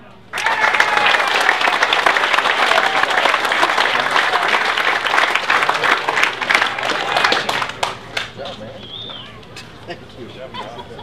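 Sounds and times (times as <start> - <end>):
crowd whooping: 0.3 - 7.7
crowd clapping: 0.3 - 8.6.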